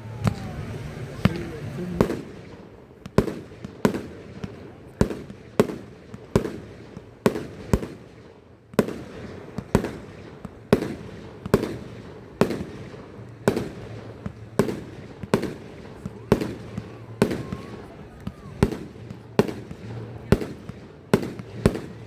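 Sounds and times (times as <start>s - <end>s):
rumbling echo: 0.0s - 3.7s.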